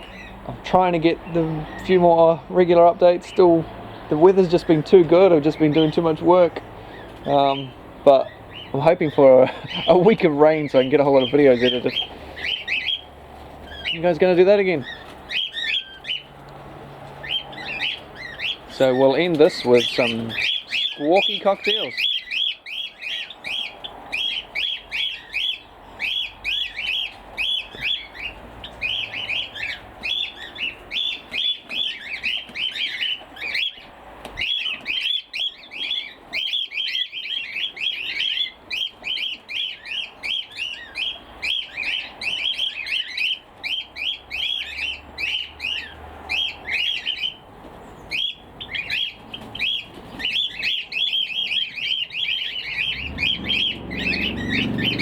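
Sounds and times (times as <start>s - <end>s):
cockatiels squawking: 4.4s - 16.3s, 17.1s - 47.4s, 48.1s - 55.0s.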